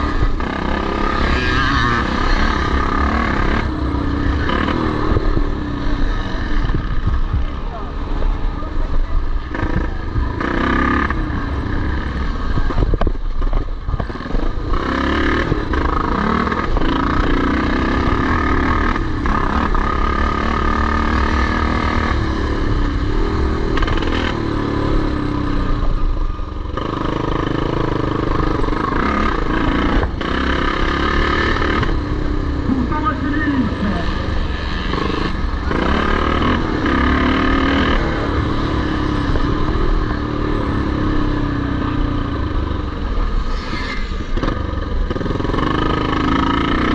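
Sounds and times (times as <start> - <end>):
motocross bike engines revving: 0.0 - 46.9.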